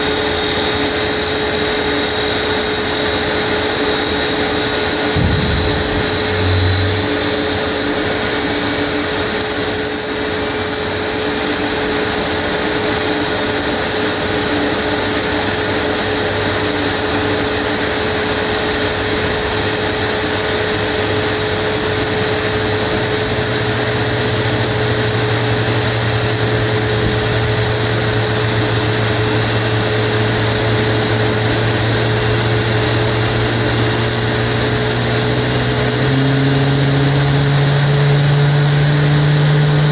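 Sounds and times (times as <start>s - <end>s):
jet engine rush and whine: 0.0s - 39.9s
low hum: 3.2s - 9.7s
high tone: 4.4s - 9.9s.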